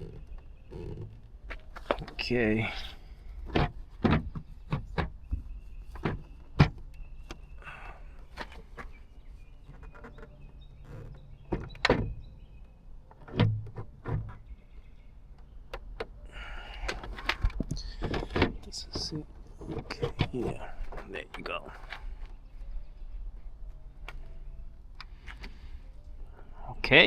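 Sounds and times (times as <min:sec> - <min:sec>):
plastic parts clicking and knocking: 0:03.4 - 0:07.4, 0:16.8 - 0:21.5.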